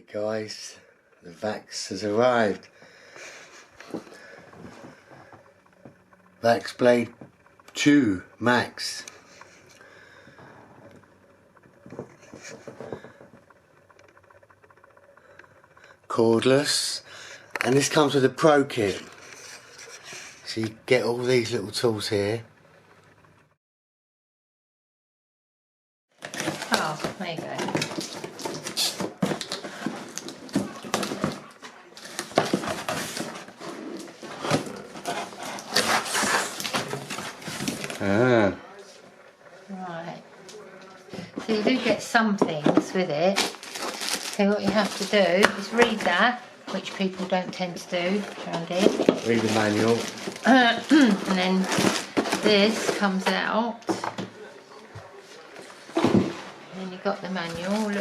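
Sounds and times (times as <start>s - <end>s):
cardboard packaging rustling: 11.0s - 13.6s, 26.2s - 38.6s, 41.2s - 58.0s.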